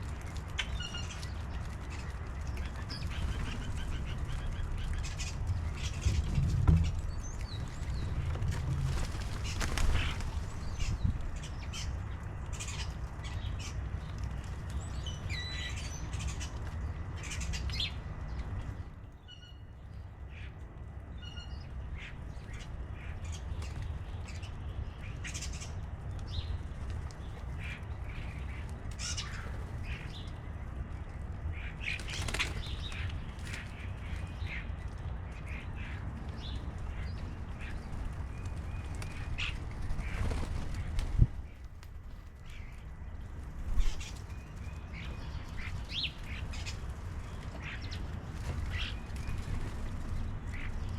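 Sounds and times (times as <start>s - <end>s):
bird wings flapping: 0.0s - 12.0s, 31.8s - 34.3s, 36.6s - 50.9s
steady low rumble: 0.0s - 15.4s.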